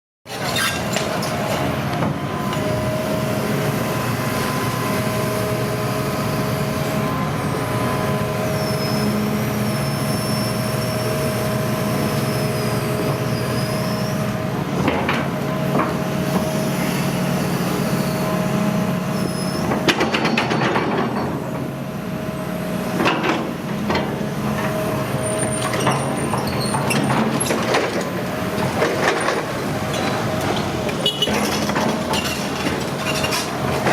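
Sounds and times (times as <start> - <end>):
hydraulic whine: 0.4 - 33.9
high squeals: 12.0 - 14.3
diesel engine humming: 21.3 - 33.9.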